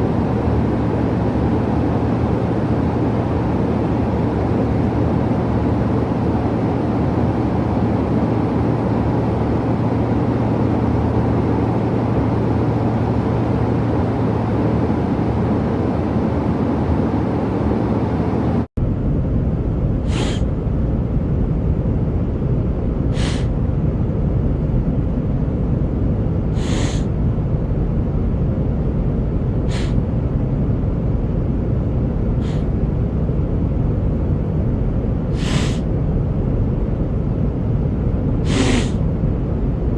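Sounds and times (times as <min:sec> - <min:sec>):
aircraft cabin drone: 0:00.0 - 0:39.9
man sniffling: 0:20.1 - 0:20.4, 0:26.6 - 0:27.1, 0:38.5 - 0:39.0.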